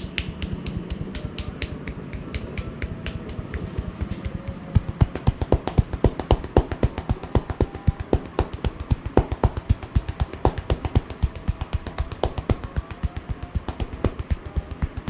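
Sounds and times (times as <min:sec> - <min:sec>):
hands slapping rhythmically: 0:00.0 - 0:15.0.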